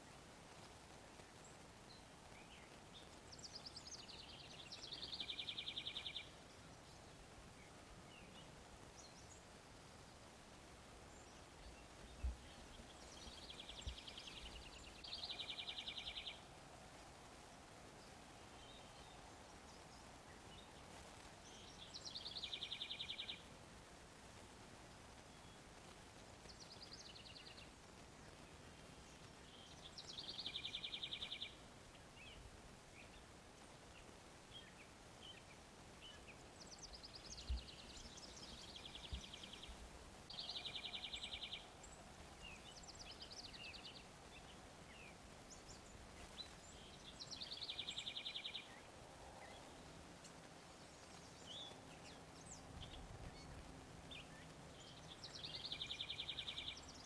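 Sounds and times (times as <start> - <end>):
faint bird chirps: 26.4 - 57.0.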